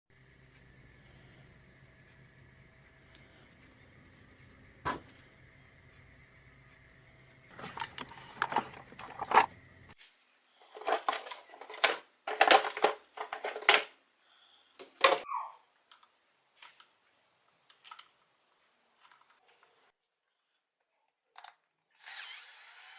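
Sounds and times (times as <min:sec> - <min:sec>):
tools clattering and scraping: 0:07.5 - 0:09.6, 0:10.6 - 0:13.9.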